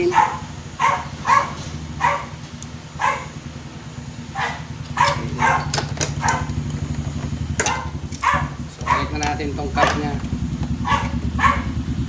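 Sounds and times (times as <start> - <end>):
dog barking: 0.0 - 2.4, 3.0 - 3.4, 4.3 - 6.6, 7.6 - 10.0, 10.8 - 11.8.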